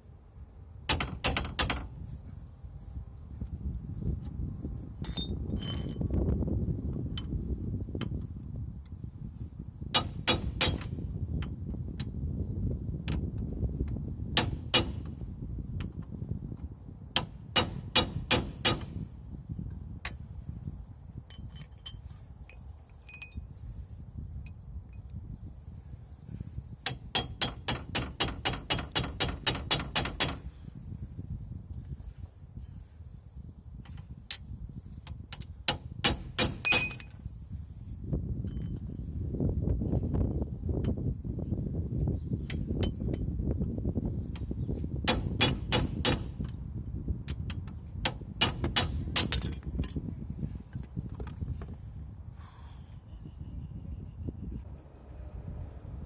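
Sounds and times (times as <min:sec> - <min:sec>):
hammer blows on metal: 0:14.4 - 0:15.2, 0:17.2 - 0:19.1, 0:45.0 - 0:46.5
steel tools clinking on metal: 0:21.3 - 0:23.5, 0:36.6 - 0:37.2.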